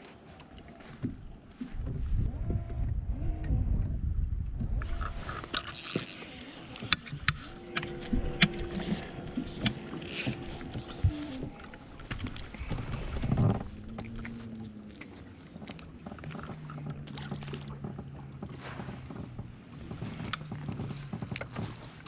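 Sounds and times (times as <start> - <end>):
wind rumbling on microphone: 1.0 - 22.0
steady whir: 5.0 - 14.2
small mechanism clicking: 5.3 - 7.9.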